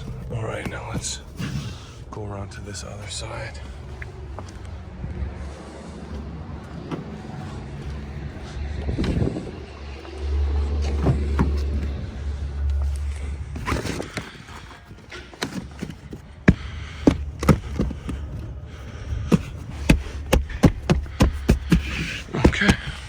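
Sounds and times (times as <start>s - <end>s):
low rumble: 0.0s - 23.0s
sharp clicks and knocks: 10.7s - 23.0s.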